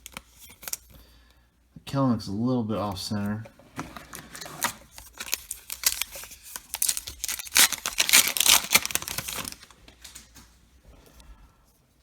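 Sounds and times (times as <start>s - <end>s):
wrapper tearing and crinkling: 0.0s - 0.9s, 4.0s - 10.3s.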